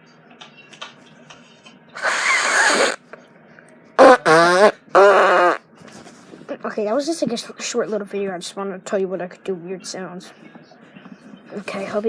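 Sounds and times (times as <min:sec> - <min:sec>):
breathy hissing mouth noise: 0:02.0 - 0:03.1, 0:04.0 - 0:05.6.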